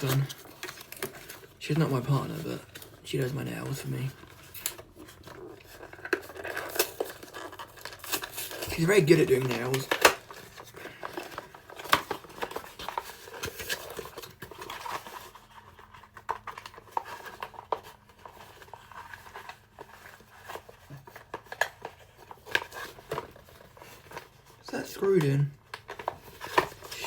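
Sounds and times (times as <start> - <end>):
toy packaging being handled: 0.0 - 27.0.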